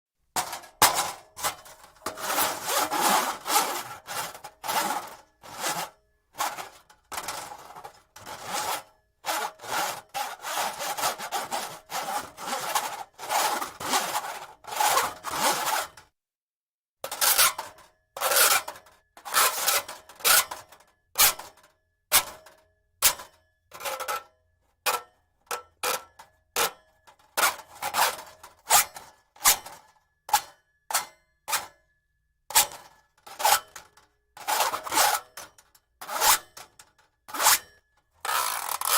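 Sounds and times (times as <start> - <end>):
steel cable scraping on metal: 0.4 - 16.0, 38.3 - 38.9.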